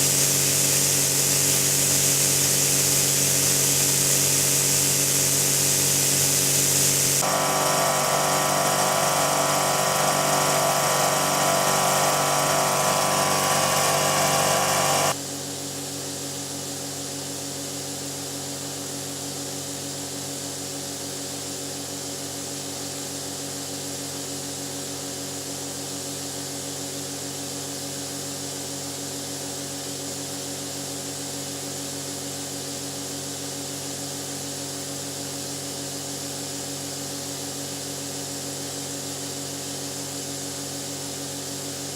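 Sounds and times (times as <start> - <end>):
snowmaking nozzle hissing: 0.0 - 15.2
steady hum: 4.9 - 15.2.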